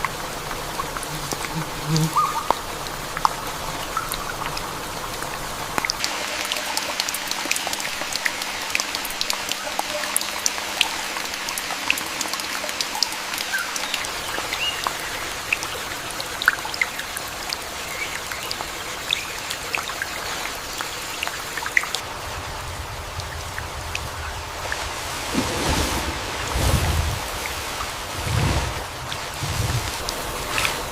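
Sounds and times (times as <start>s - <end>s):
heavy rain falling: 0.0s - 30.9s
low rumble: 22.0s - 30.7s.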